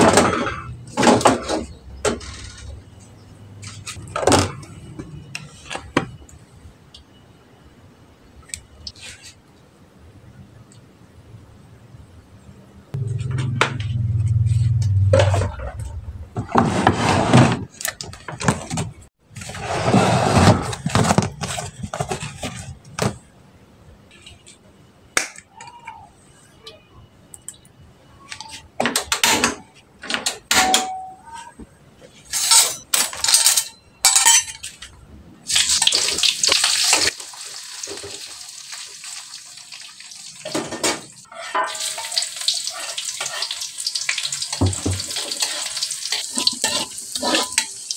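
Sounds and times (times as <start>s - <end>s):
dishes and utensils clinking: 32.2s - 34.9s, 40.4s - 43.6s, 44.4s - 47.9s.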